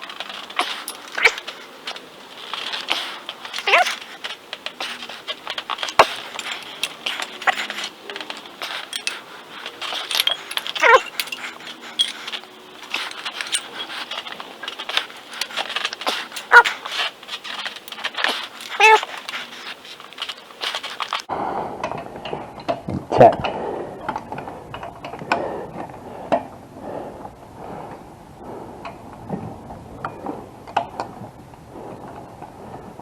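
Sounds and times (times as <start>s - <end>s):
short wavering squeaks: 0.0s - 21.2s.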